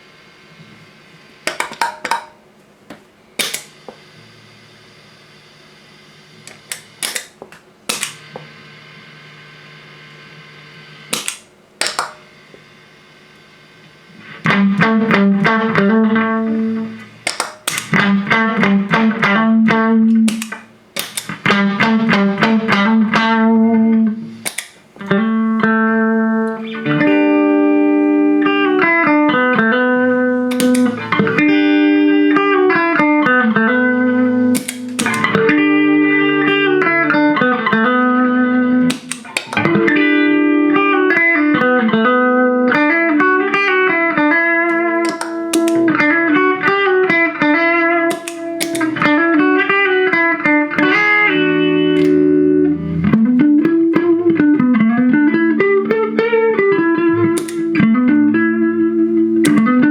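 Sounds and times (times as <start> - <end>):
clean electric guitar: 14.1 - 59.9.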